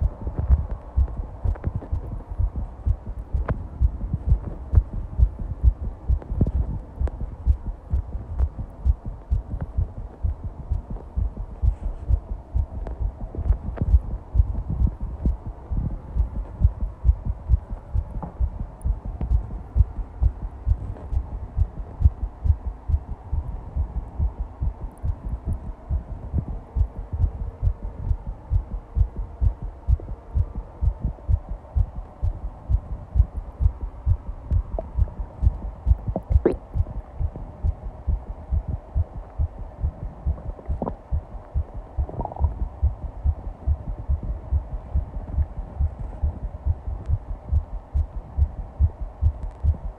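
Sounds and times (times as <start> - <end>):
fast heartbeat thuds: 0.0 - 49.9.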